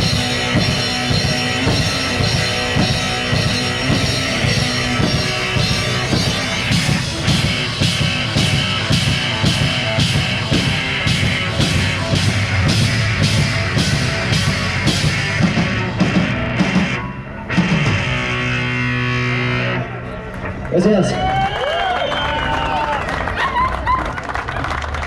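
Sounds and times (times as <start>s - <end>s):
drum kit: 0.0s - 19.6s
distorted electric guitar: 0.0s - 21.1s
bass guitar: 0.0s - 21.6s.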